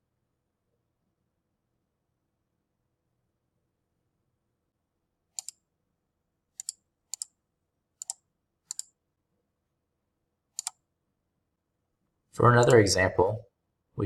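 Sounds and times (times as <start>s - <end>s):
mouse button clicking: 10.6s - 10.8s.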